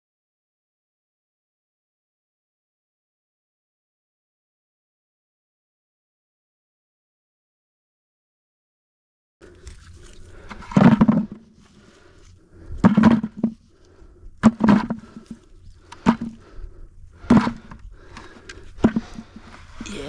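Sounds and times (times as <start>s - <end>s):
dull hollow walnut thunks: 10.4s - 11.4s, 12.8s - 13.6s, 14.4s - 16.5s, 17.2s - 19.6s.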